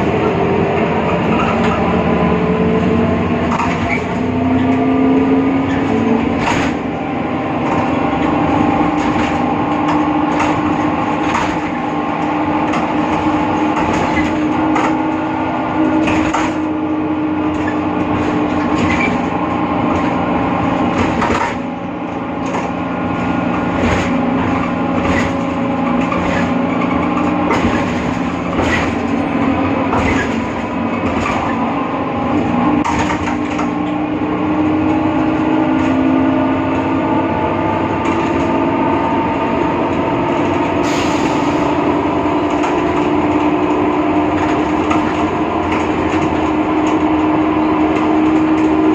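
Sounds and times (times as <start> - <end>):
bus differential whine: 0.0 - 48.9
rattles and knocks: 7.6 - 34.0, 41.5 - 48.9.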